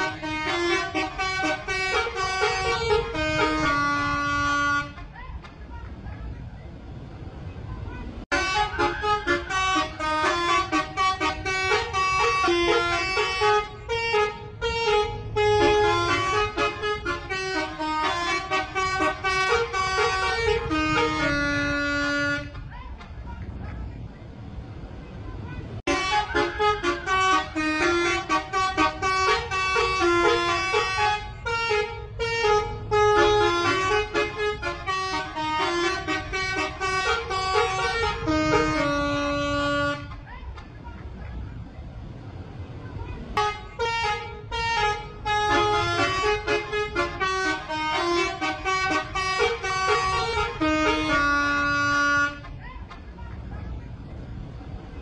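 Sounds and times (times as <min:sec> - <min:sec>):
air horn trumpets playing melody: 0:00.0 - 0:05.0, 0:08.3 - 0:22.5, 0:25.9 - 0:40.1, 0:43.4 - 0:52.4
low engine rumble: 0:00.0 - 0:55.0.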